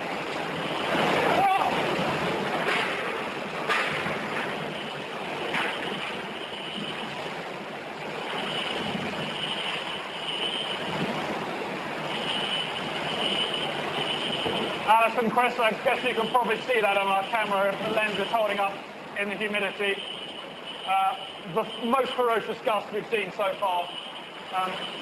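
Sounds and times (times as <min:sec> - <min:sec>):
wind blowing in hard gusts: 0:00.0 - 0:16.8.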